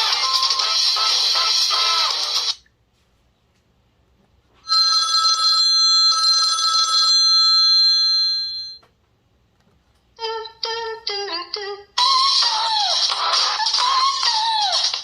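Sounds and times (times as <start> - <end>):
telephone bell ringtone trilling: 4.7 - 8.8.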